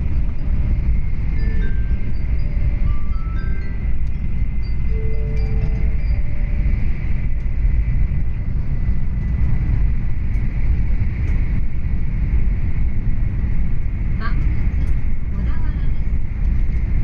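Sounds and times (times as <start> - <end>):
train interior low rumble: 0.0 - 17.0
onboard chime: 1.3 - 7.0.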